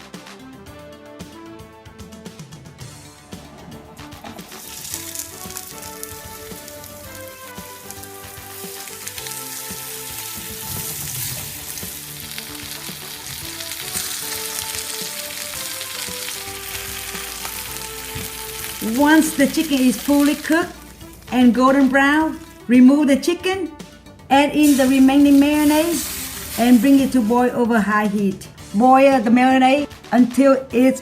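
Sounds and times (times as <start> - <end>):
chicken sizzling in oil: 4.4 - 22.7, 23.8 - 27.7.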